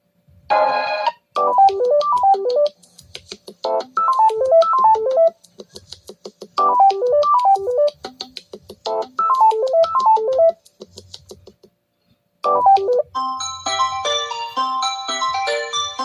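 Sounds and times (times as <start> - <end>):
keyboard ringtone melody: 0.5 - 2.7, 3.6 - 5.4, 6.6 - 8.0, 8.8 - 10.6, 12.4 - 16.0
higher chiming ringtone: 12.5 - 16.0.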